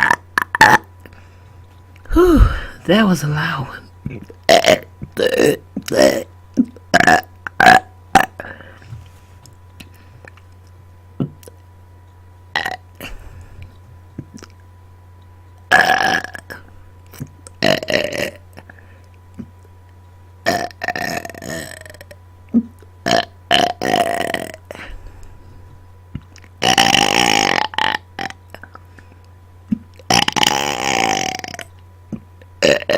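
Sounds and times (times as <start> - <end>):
person burping: 0.0 - 0.9, 2.1 - 2.9, 4.5 - 8.7, 12.6 - 12.8, 15.7 - 16.6, 17.6 - 18.4, 20.4 - 22.1, 23.1 - 24.7, 26.6 - 28.4, 30.1 - 31.7, 32.6 - 32.9.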